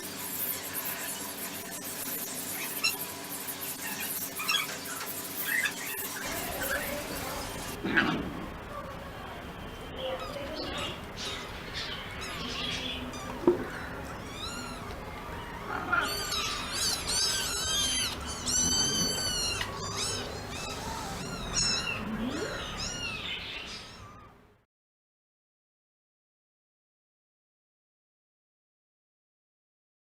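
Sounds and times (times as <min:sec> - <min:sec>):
noisy background: 0:00.0 - 0:24.4
squeaky animal calls: 0:00.4 - 0:07.8, 0:10.0 - 0:24.4.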